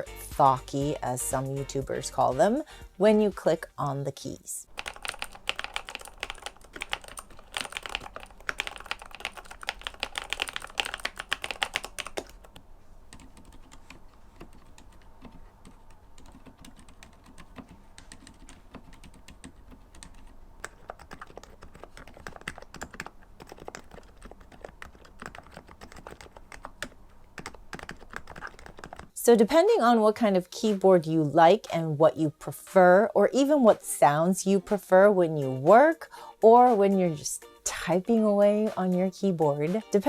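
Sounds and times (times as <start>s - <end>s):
mechanical keyboard typing: 4.7s - 29.2s.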